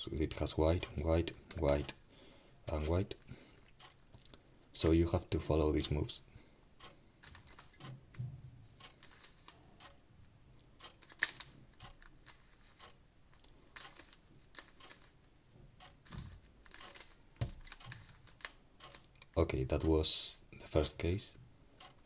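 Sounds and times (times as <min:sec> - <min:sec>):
puzzle cube layers clicking: 0:10.8 - 0:15.2, 0:15.8 - 0:19.3.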